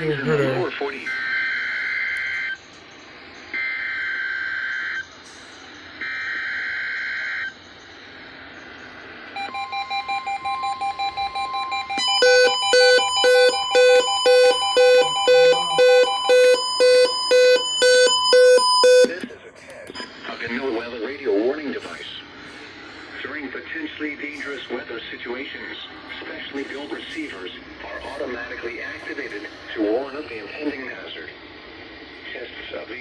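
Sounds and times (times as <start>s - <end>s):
loud alarm beeps: 9.4s - 19.2s
buzzy two-tone data bursts: 12.0s - 19.2s
steady alert tone: 12.0s - 19.2s.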